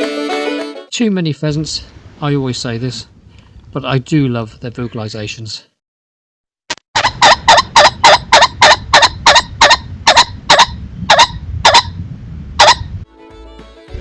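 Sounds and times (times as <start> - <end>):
pheasant calling harsh notes: 7.0 - 11.9.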